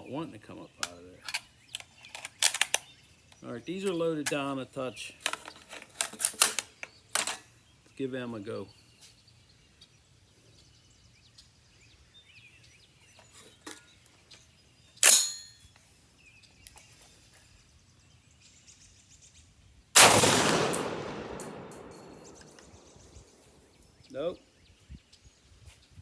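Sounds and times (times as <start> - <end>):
sharp crack: 20.0 - 23.0
rifle shot echoing: 20.0 - 23.2.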